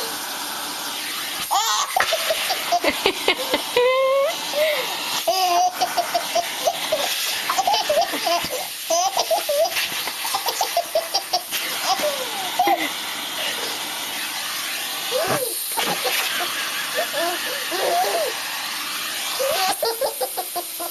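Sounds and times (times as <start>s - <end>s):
vacuum cleaner hiss: 0.0s - 20.9s
baby laughing: 1.5s - 3.9s, 5.2s - 13.0s, 15.1s - 18.4s, 19.4s - 20.9s.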